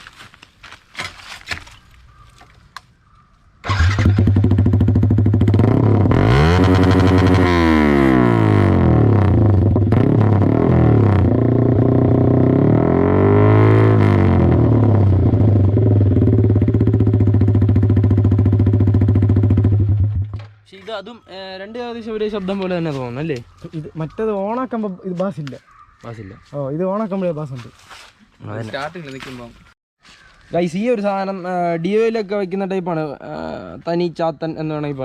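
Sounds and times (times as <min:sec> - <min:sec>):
motorcycle engine idling and revving: 0:03.6 - 0:20.5.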